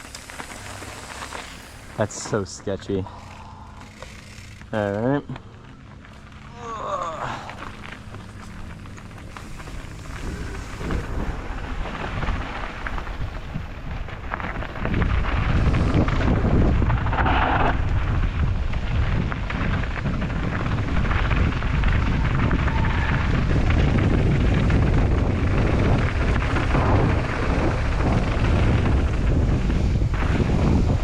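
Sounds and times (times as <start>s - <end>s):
bike rattling over rough trail: 0.0s - 31.0s
wind buffeting microphone: 8.2s - 31.0s.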